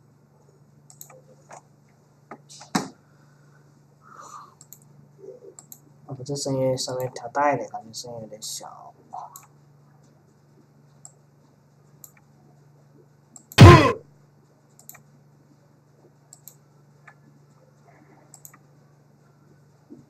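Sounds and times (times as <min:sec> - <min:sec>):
computer mouse clicking: 0:00.9 - 0:01.2, 0:14.8 - 0:15.0, 0:16.3 - 0:16.6, 0:18.3 - 0:18.6
loud hit sound effect: 0:13.6 - 0:14.0.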